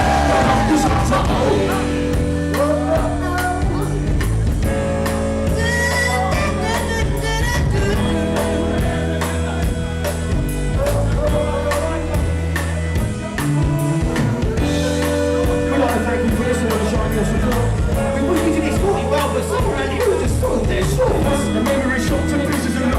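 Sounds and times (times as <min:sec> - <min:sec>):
person singing: 0:00.0 - 0:04.2, 0:05.4 - 0:09.8, 0:10.7 - 0:12.3
live band music: 0:00.0 - 0:22.9.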